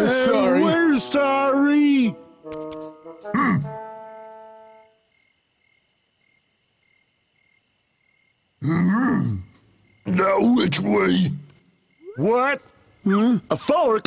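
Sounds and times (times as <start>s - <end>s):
wordless vocal sound: 0.0s - 2.3s
crickets chirping: 0.0s - 14.0s
short vocal exclamation: 12.0s - 12.5s.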